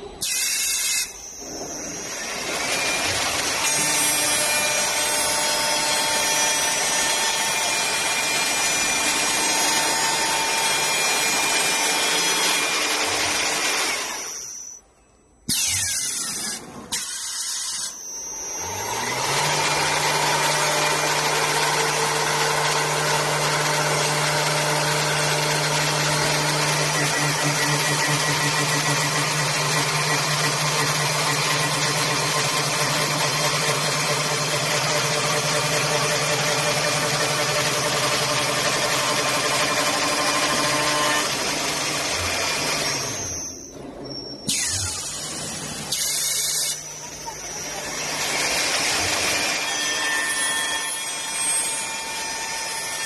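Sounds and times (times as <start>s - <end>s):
machine spindle whining: 0.0s - 53.0s.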